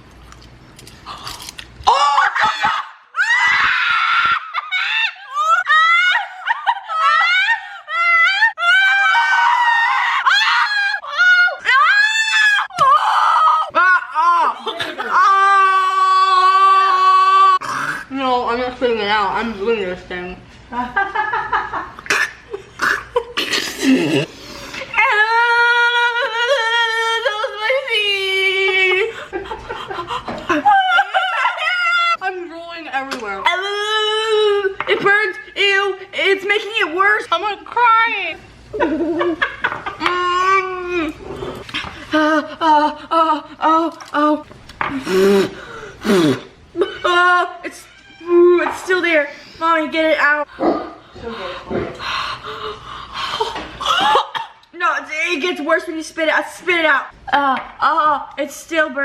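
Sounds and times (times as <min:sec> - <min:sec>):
young women screaming: 0:01.9 - 0:17.6
girl wailing: 0:07.0 - 0:17.6.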